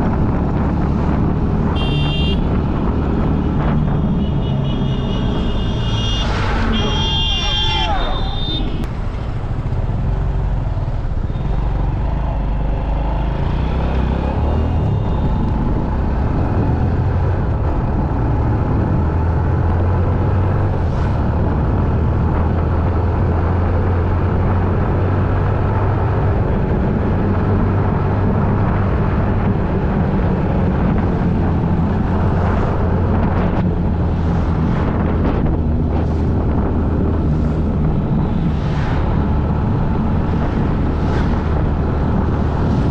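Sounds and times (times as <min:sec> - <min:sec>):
road and wind noise: 0:00.0 - 0:42.9
vehicle engine rumble: 0:00.0 - 0:42.9.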